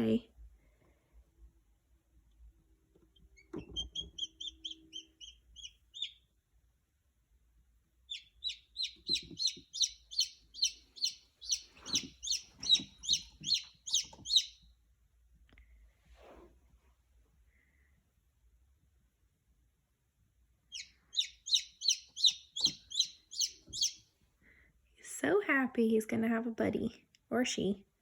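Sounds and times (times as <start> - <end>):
chick peeping: 3.2 - 6.2, 8.1 - 14.7, 20.7 - 24.1.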